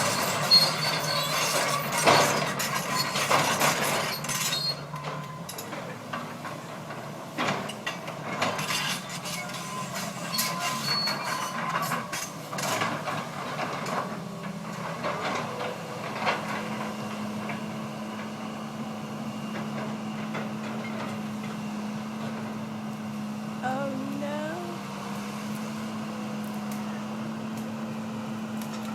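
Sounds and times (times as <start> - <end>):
low engine hum: 18.4 - 28.9.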